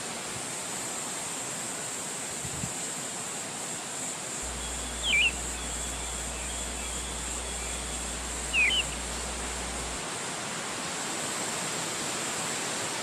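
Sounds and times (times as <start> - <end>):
wind through forest: 0.0 - 13.0
small bird chirping: 4.4 - 10.0.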